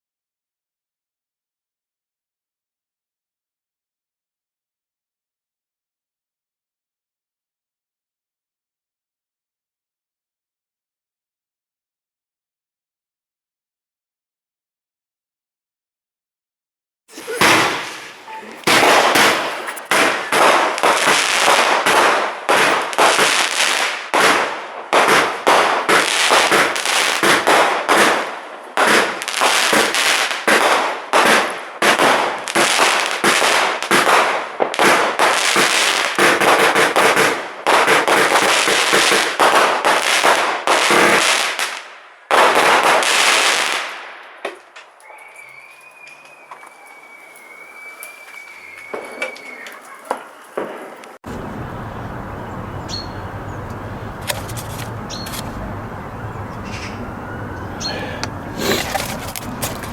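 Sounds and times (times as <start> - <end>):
firework barrage bangs: 17.1 - 44.5.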